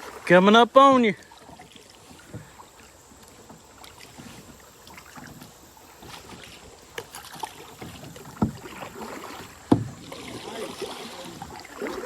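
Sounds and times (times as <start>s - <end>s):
faint water noise: 0.0s - 12.0s
sharp knocks and thumps: 7.7s - 10.2s.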